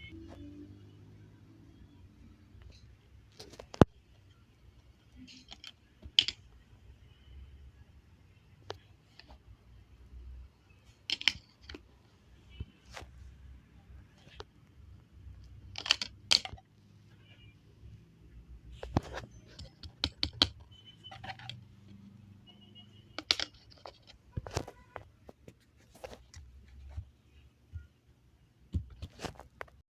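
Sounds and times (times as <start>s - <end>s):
faint electronic beeps: 0.0s - 3.2s, 6.6s - 11.1s, 16.9s - 19.9s, 20.5s - 23.2s
phone keypad clicks and knocks: 18.8s - 21.6s.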